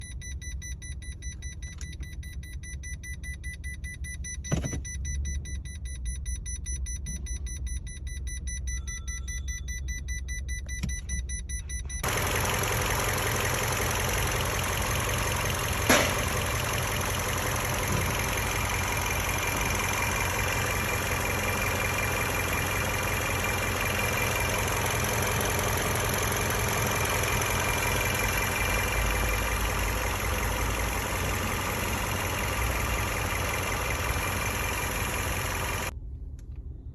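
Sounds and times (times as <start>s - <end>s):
short beep: 0.0s - 12.1s
car engine starting and idling: 11.8s - 36.6s
low hum: 12.0s - 36.9s.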